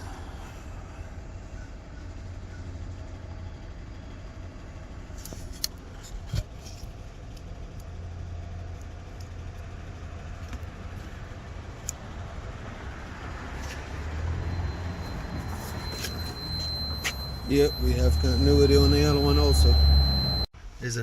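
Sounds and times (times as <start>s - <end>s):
steady low rumble: 0.0s - 20.5s.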